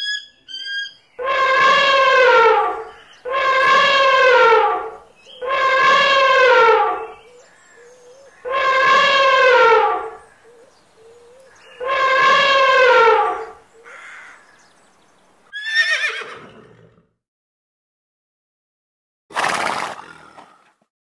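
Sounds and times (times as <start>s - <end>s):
horse-like whinnying: 15.6s - 17.1s.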